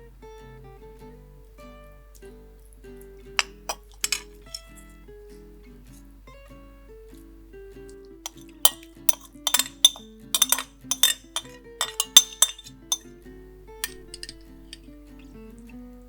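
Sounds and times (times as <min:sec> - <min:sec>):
utensils clinking against dishes: 0:03.4 - 0:04.7, 0:08.3 - 0:13.0, 0:13.8 - 0:14.8.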